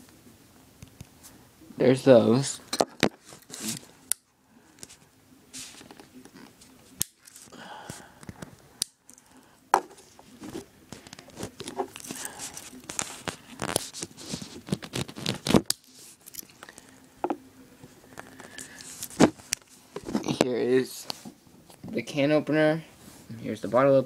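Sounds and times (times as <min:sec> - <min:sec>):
rustling: 0:04.8 - 0:07.6, 0:09.2 - 0:17.0.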